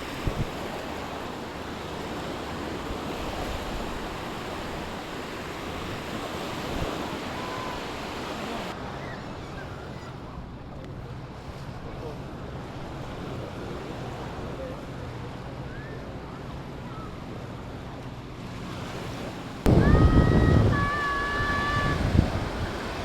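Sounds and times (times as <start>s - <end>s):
wind on microphone: 0.0s - 1.0s, 19.6s - 23.0s
sea surf washing onto beach: 0.0s - 8.9s, 17.2s - 23.0s.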